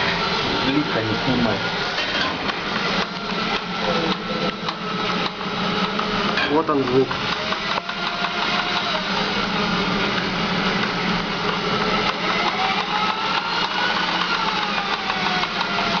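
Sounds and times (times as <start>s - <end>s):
electric drill whirring: 0.0s - 16.0s.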